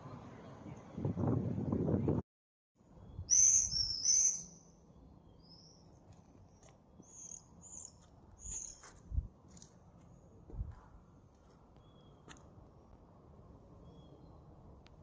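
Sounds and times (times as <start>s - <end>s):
small birds chirping: 3.0s - 9.2s.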